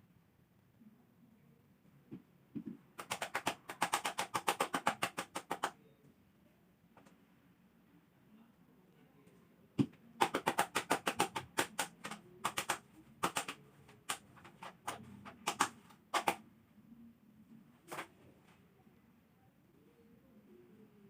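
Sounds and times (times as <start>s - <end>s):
sharp clicks and taps: 9.8s - 16.4s.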